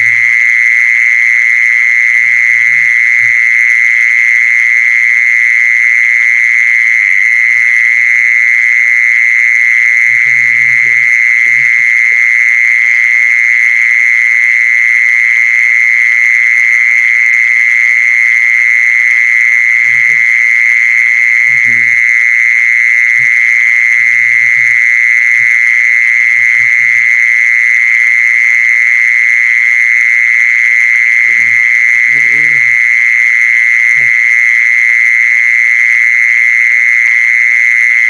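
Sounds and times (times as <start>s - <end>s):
high-pitched animal trill: 0.0s - 0.6s, 10.1s - 12.3s, 19.8s - 20.4s, 21.4s - 22.1s, 31.2s - 33.2s.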